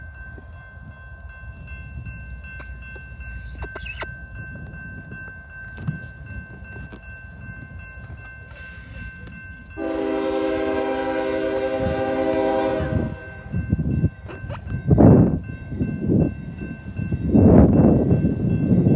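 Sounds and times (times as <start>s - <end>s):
train rumble: 0.0s - 18.9s
locomotive air horn chord: 9.8s - 13.6s.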